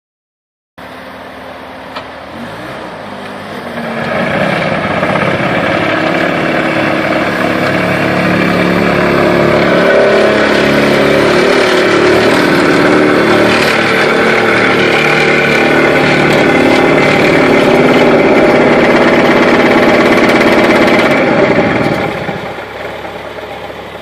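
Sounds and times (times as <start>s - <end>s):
skid steer engine revving: 0.8s - 24.0s.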